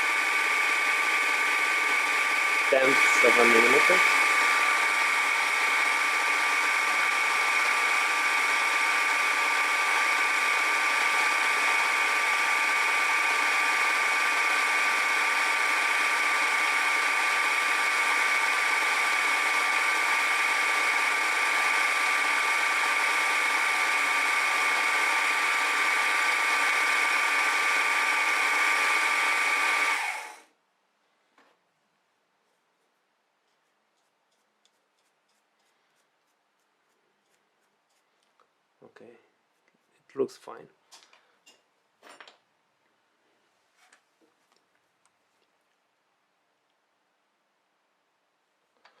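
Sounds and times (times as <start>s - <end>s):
milling machine whining: 0.0s - 30.4s.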